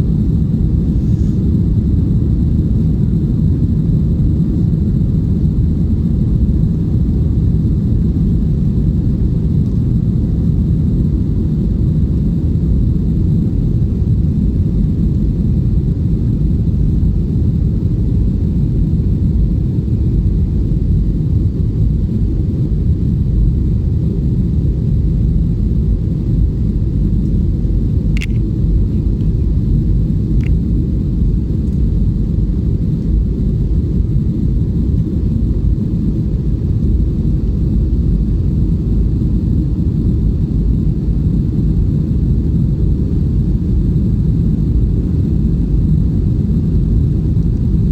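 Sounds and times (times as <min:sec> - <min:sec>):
jet cabin engine rumble: 0:00.0 - 0:47.9
short clicks: 0:28.2 - 0:28.4.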